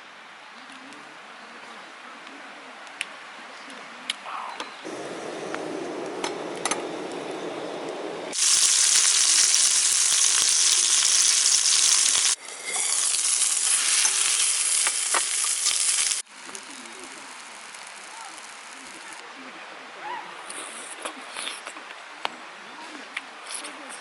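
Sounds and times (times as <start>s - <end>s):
low hiss: 4.9s - 19.3s
food sizzling in a hot pan: 8.3s - 19.2s.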